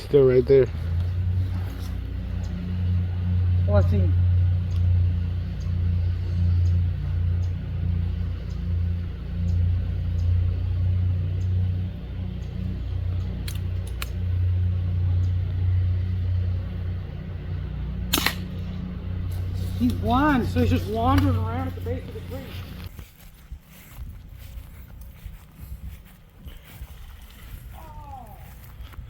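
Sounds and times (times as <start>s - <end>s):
low engine hum: 0.0s - 29.0s
sharp clicks: 12.4s - 14.3s, 18.0s - 18.9s
loud sharp crack: 18.1s - 18.6s.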